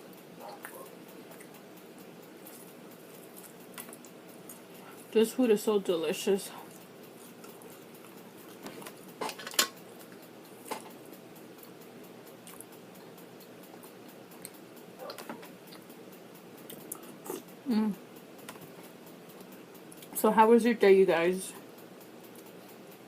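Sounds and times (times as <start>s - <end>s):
utensils clinking against dishes: 8.8s - 9.8s.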